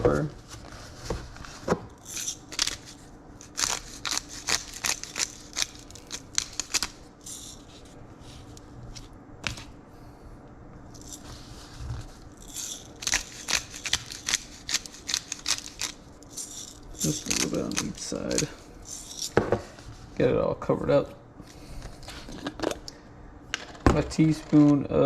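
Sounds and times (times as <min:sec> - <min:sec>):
pepper grinder crunching clicks: 0:03.4 - 0:07.6, 0:12.4 - 0:19.3.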